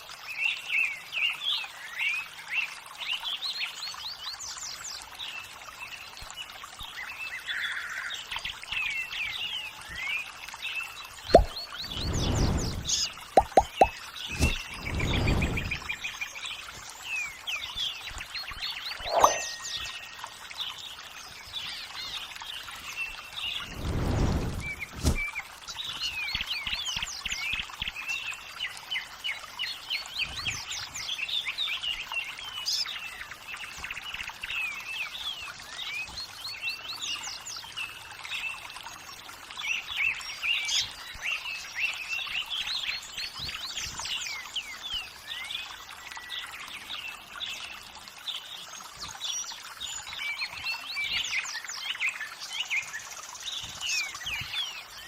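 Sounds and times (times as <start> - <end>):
running water: 0.0 - 55.0
birds chirping and singing: 17.2 - 20.8.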